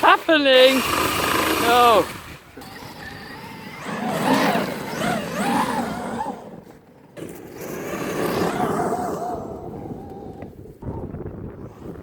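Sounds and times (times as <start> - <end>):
toy truck motor whining: 0.7 - 10.5.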